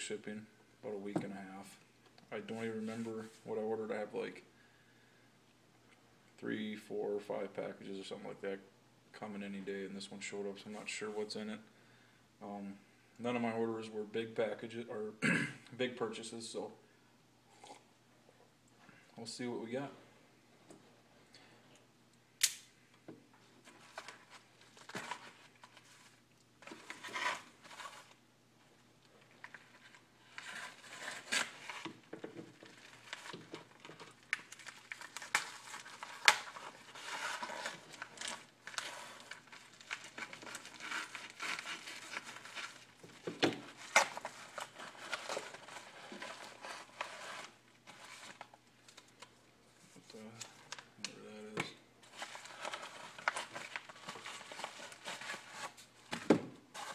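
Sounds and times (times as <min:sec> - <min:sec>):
packing material crinkling: 0:29.2 - 0:49.4, 0:50.1 - 0:56.9
tape and cardboard tearing: 0:30.3 - 0:32.0.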